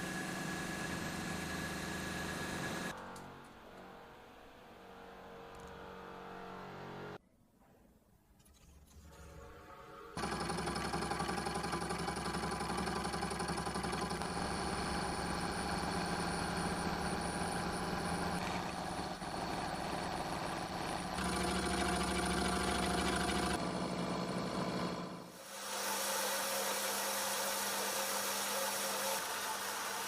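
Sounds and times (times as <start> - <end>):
milling machine hum: 0.0 - 2.9, 10.2 - 30.0.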